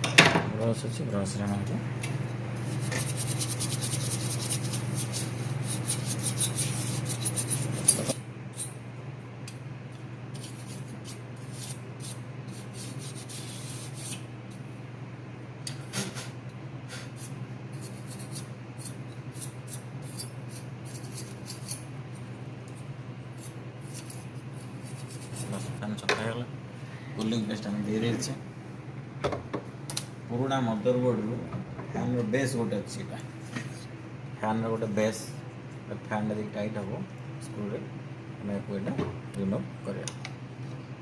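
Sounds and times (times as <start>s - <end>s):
steady low hum: 0.0s - 41.0s
brush scrubbing fan: 0.6s - 8.7s, 10.0s - 14.8s, 15.9s - 28.4s.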